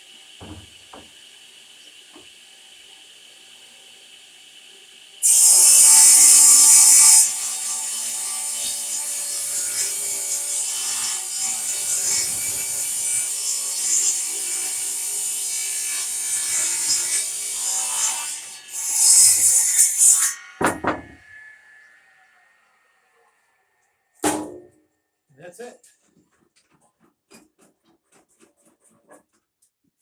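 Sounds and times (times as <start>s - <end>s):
power saw cutting plywood: 0.0s - 23.4s.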